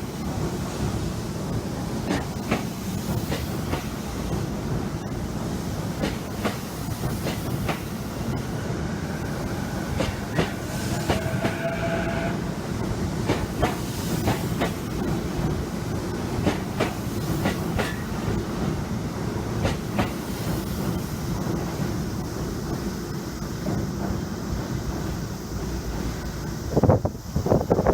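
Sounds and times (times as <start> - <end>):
electric train rumbling: 0.0 - 27.9
wheels clacking over rail joints: 6.0 - 18.4.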